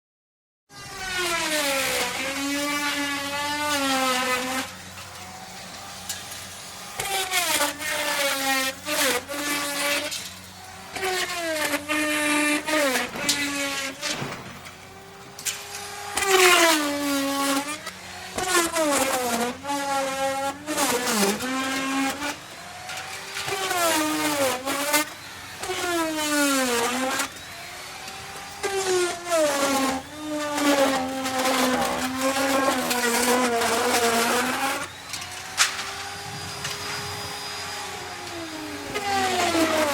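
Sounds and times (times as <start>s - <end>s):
wood router cutting wood: 0.7s - 39.9s.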